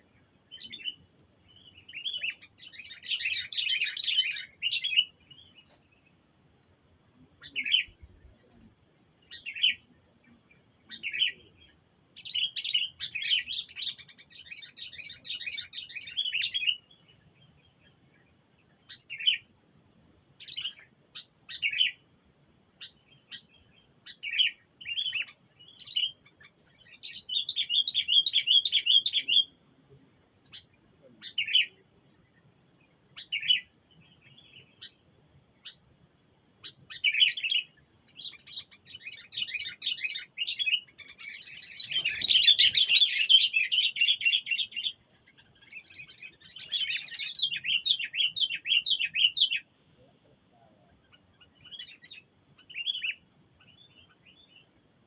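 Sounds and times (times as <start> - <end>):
bulbul chattering calls: 0.0 - 5.7, 7.4 - 8.1, 9.3 - 9.9, 10.9 - 16.9, 20.4 - 22.0, 22.8 - 29.5, 30.4 - 31.8, 33.2 - 35.0, 36.6 - 49.7, 51.0 - 54.6.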